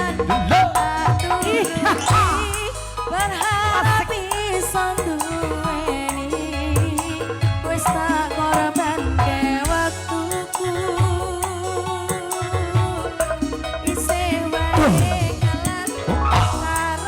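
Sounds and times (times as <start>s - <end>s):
hand drum beat: 0.0s - 17.0s
ornamented lead melody: 0.0s - 17.0s.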